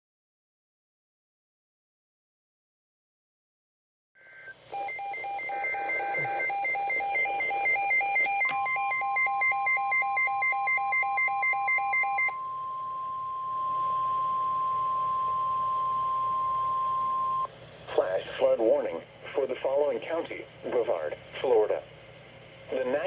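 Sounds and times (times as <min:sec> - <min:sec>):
steady alarm tone: 0:04.3 - 0:17.5
two-pitched electronic beeping: 0:04.4 - 0:17.5.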